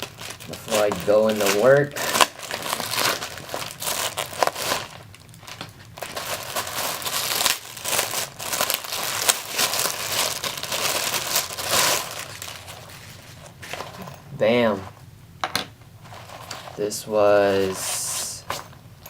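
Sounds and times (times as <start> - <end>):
packaging crinkling and rustling: 0.0 - 15.0, 16.0 - 18.8.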